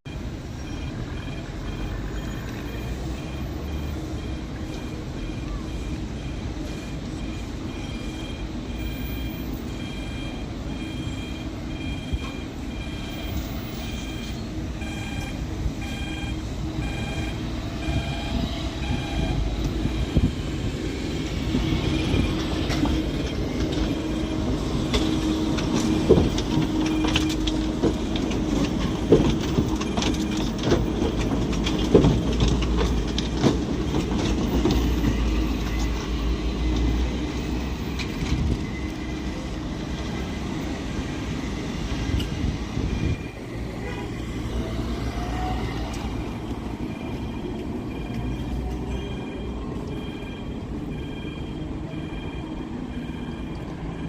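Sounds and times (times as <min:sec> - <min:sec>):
tram running rumble: 0:00.0 - 0:54.0
two-tone beep: 0:00.1 - 0:20.3, 0:21.8 - 0:24.4, 0:46.2 - 0:54.0.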